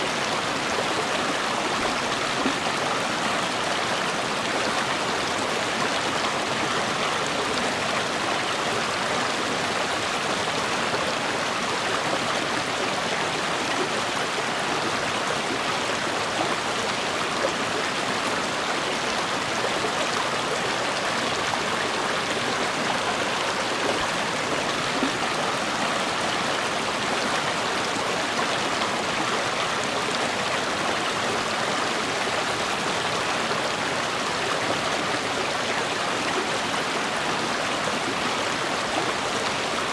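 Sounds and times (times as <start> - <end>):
water flowing over rocks: 0.0 - 39.9.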